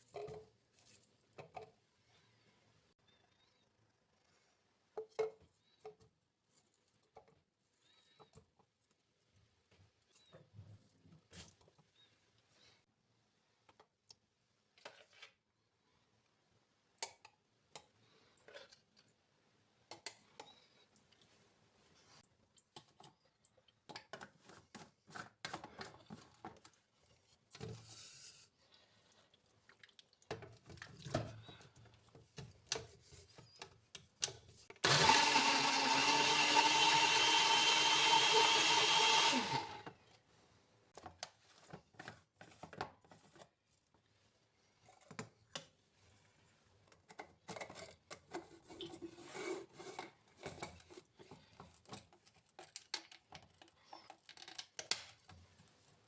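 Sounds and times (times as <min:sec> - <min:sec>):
blender motor running: 0:34.8 - 0:39.9.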